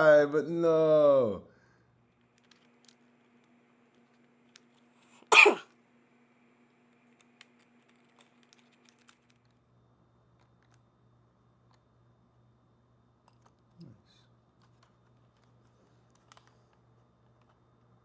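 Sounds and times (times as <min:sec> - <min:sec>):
man coughing: 0:05.3 - 0:05.6
faint handling clicks: 0:14.6 - 0:17.7.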